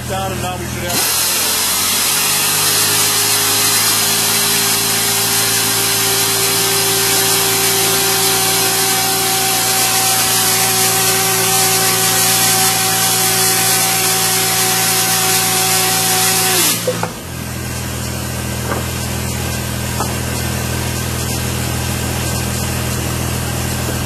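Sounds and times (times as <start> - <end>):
machine whining over hiss: 0.3 - 17.3.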